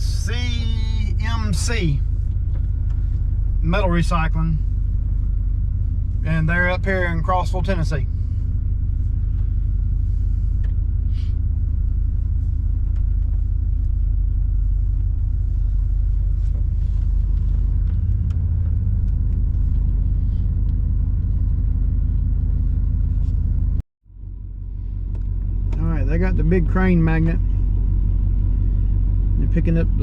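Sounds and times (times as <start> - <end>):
vehicle engine idling: 0.0 - 30.0.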